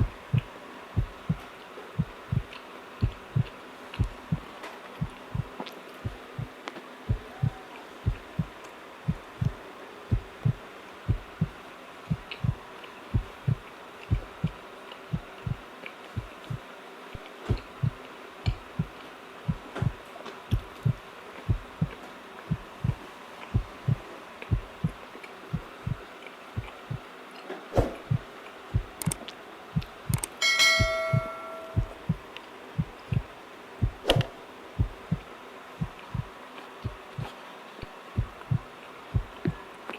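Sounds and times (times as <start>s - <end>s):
short ringing ding: 30.4s - 31.9s.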